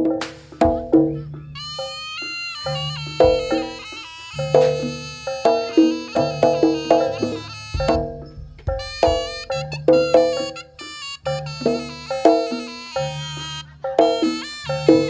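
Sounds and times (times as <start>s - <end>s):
shawm melody: 0.0s - 15.0s.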